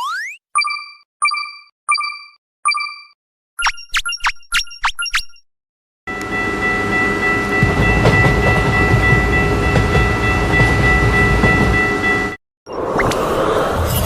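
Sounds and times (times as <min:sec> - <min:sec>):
train rumbling: 0:06.1 - 0:12.4.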